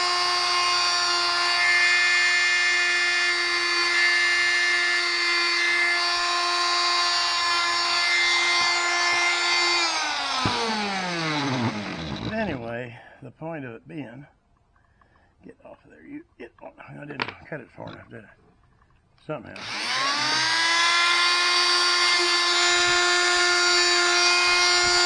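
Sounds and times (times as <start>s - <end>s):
oscillating multi-tool cutting: 0.0s - 12.7s, 19.5s - 25.0s.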